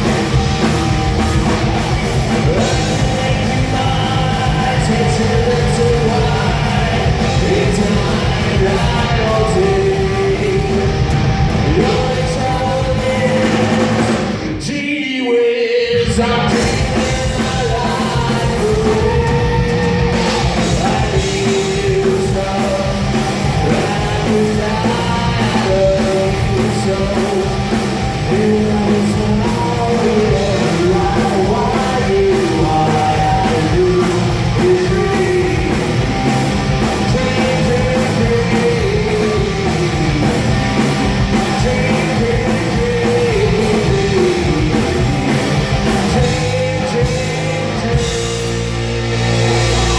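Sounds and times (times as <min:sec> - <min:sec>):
punk rock band with singer: 0:00.0 - 0:49.9.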